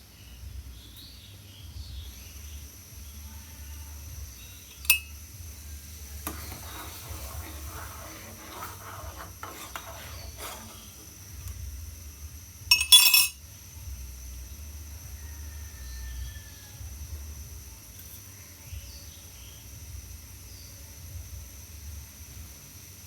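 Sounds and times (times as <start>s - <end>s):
metal spoon clinking in pan: 4.7s - 5.1s, 12.7s - 13.4s
spoon scraping and tapping: 4.7s - 5.2s, 6.2s - 11.6s, 12.7s - 13.4s.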